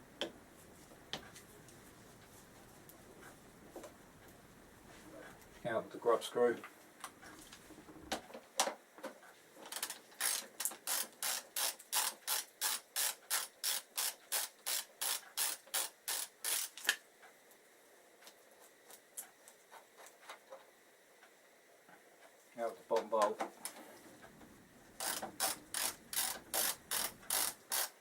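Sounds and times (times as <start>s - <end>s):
ratchet wrench clicking: 9.8s - 16.9s, 25.0s - 28.0s.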